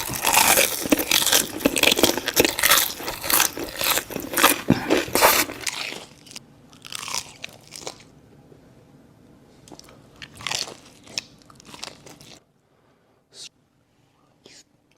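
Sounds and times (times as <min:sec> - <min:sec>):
crunching bites of fried chicken: 0:00.0 - 0:08.1, 0:09.7 - 0:12.4.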